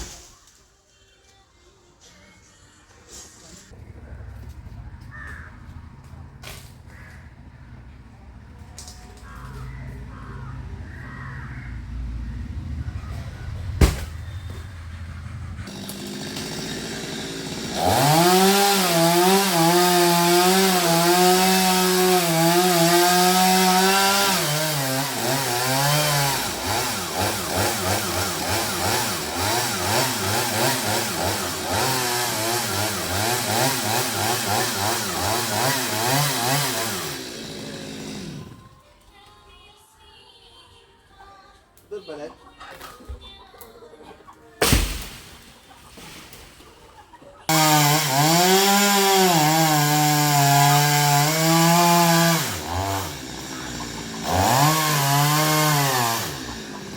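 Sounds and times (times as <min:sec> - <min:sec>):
chainsaw cutting wood: 0:15.7 - 0:38.7, 0:47.5 - 0:56.9.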